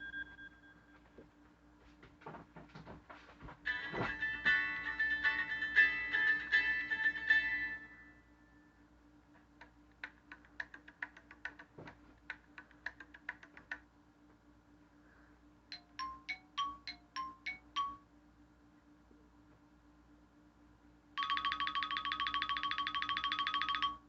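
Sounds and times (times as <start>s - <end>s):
faint irregular clicks: 9.3s - 13.9s.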